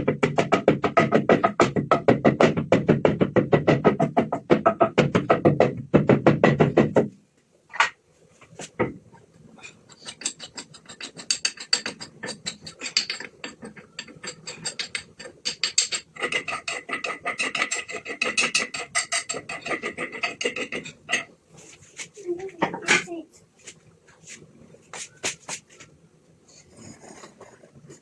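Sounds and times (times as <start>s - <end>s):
rasping scraping strokes on food: 9.5s - 22.5s.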